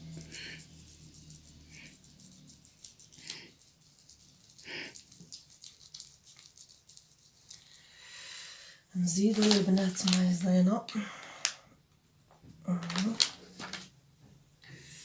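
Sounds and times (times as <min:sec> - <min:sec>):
wet rubbing and squishing: 0:00.0 - 0:08.0, 0:09.1 - 0:10.6.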